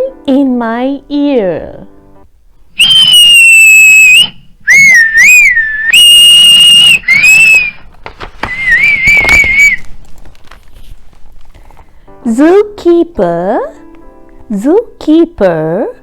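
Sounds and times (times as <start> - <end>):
shrill whistle blasts: 2.8 - 9.9.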